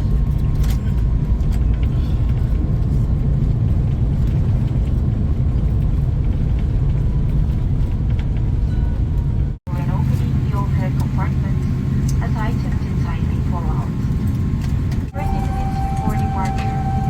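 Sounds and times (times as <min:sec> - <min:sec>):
airliner cabin rumble: 0:00.0 - 0:17.0.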